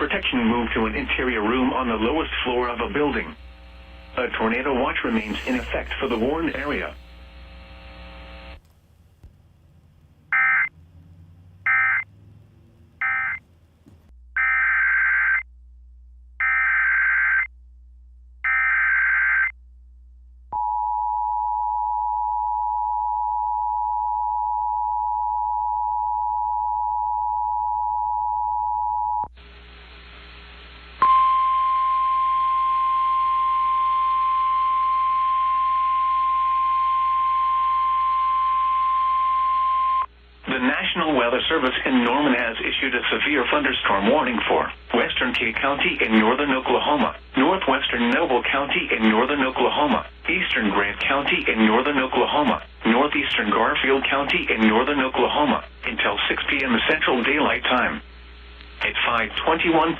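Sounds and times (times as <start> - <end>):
radio hiss: 0.0 - 8.6, 40.4 - 59.9
data bursts: 3.3 - 7.1
steady single-tone warning alarm: 10.3 - 10.8, 11.6 - 12.1, 13.0 - 13.4, 31.0 - 40.1.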